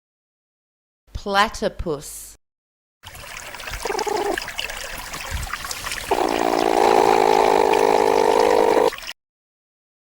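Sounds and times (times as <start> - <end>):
water hiss: 3.5 - 9.1
platypus buzzing call: 3.8 - 4.4, 6.1 - 8.9.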